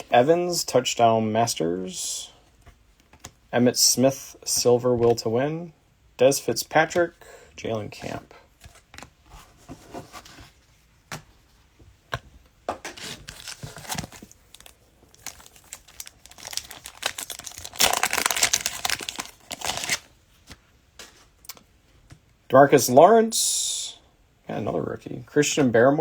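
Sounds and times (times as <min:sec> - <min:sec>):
cellophane tearing and crinkling: 0:13.0 - 0:20.1.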